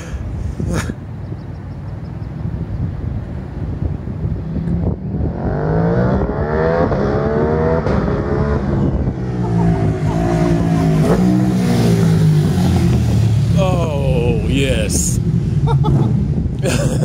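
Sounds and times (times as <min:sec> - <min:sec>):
motorcycle engine revving: 0:04.4 - 0:13.7.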